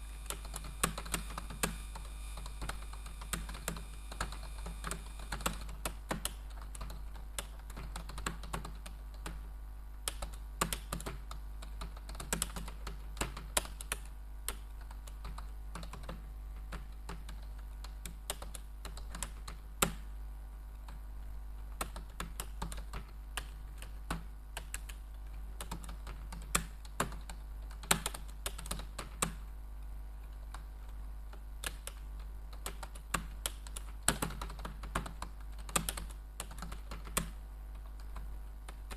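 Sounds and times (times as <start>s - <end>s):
low hum: 0.0s - 5.7s
computer keyboard typing: 0.1s - 20.1s, 20.8s - 29.4s, 30.2s - 38.9s.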